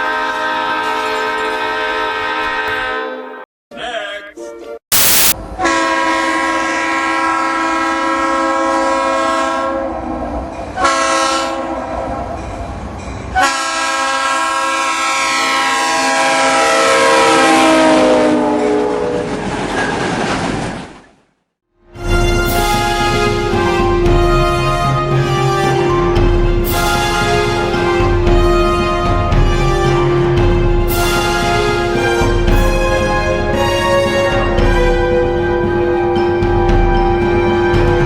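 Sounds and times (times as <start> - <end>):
locomotive horn blasts: 0.0 - 3.4, 5.0 - 10.0, 10.8 - 11.8, 13.4 - 19.1, 22.0 - 36.2
short sharp horn burst: 4.9 - 5.4.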